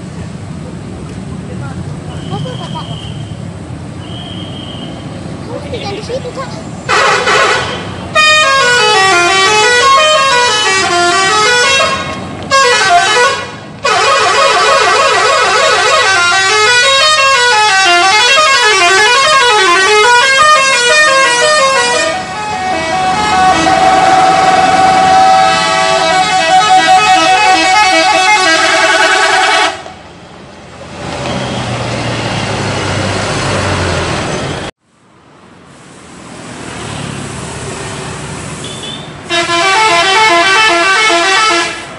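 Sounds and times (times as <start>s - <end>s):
multi-tone musical air horn: 6.9s - 29.9s, 38.6s - 41.9s.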